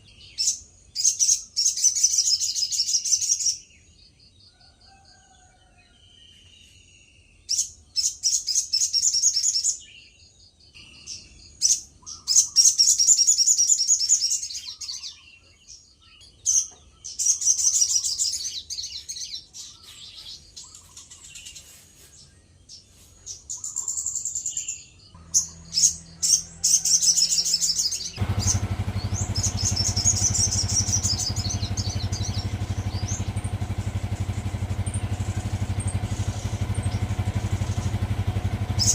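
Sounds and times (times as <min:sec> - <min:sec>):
bird trilling song: 0:00.0 - 0:38.9
low rumble: 0:28.2 - 0:38.9.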